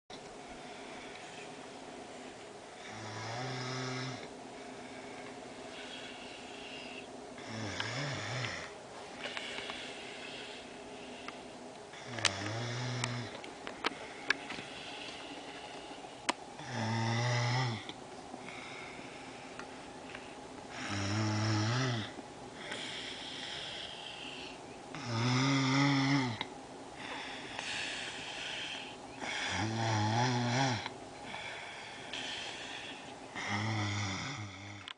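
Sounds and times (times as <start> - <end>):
person snoring: 2.8 - 4.3, 5.7 - 8.7, 11.9 - 13.4, 16.6 - 19.0, 20.7 - 34.9
breathy exhales: 30.6 - 34.8.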